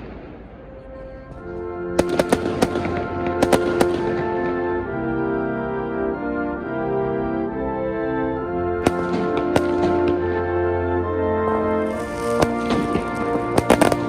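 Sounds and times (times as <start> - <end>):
fireworks bangs and cracks: 0.0 - 0.8, 2.0 - 4.7, 8.8 - 10.5, 11.5 - 14.0
music with long held chords: 0.0 - 14.0.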